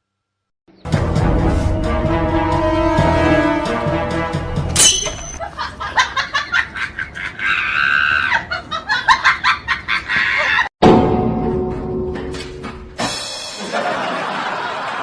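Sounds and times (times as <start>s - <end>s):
music: 0.7s - 4.8s, 10.8s - 14.2s.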